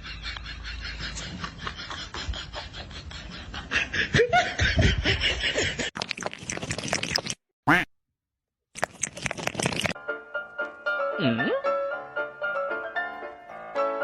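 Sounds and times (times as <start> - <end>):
person laughing in breathy snickers: 0.0 - 5.9.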